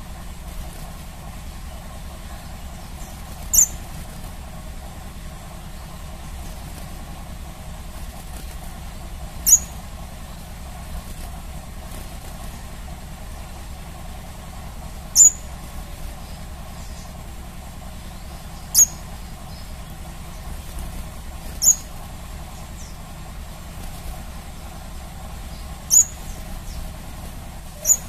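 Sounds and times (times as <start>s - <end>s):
low background hum: 0.0s - 28.0s
bird chirping: 1.6s - 3.9s, 9.4s - 9.8s, 15.1s - 15.6s, 16.2s - 17.2s, 18.1s - 20.7s, 21.5s - 23.0s, 25.4s - 27.0s, 27.6s - 28.0s.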